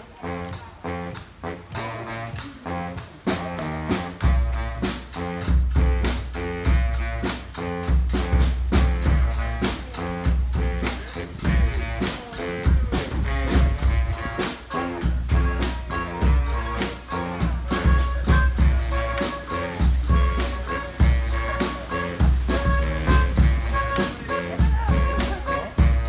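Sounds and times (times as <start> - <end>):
brass band horns: 0.0 - 26.0
steady drumbeat: 1.8 - 26.0
heavy low bass line: 4.0 - 26.0.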